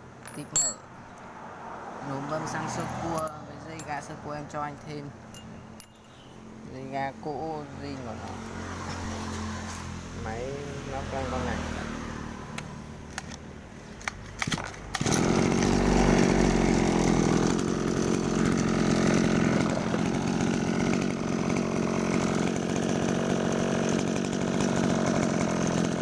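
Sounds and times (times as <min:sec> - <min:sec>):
brush cutter engine running: 0:06.0 - 0:13.4, 0:14.0 - 0:26.0.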